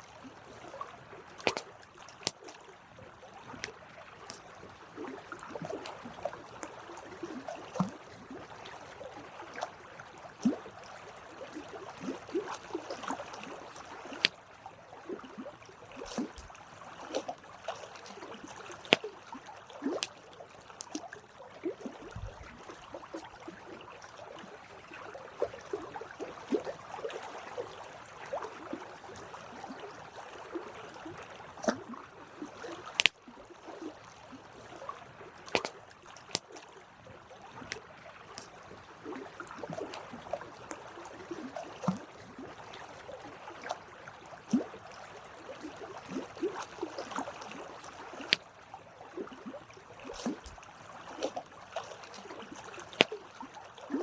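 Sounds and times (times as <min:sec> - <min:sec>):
campfire crackling and popping: 0:32.9 - 0:33.1.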